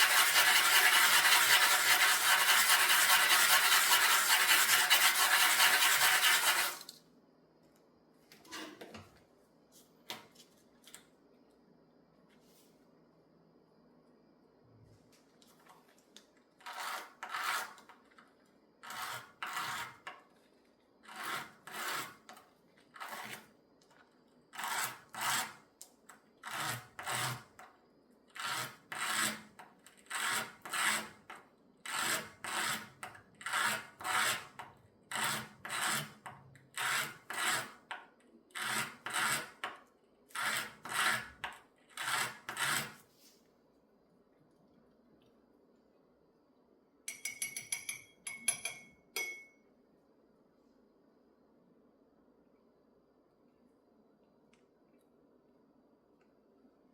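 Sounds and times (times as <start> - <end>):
sandpaper rubbing on jewelry: 0.0 - 6.8.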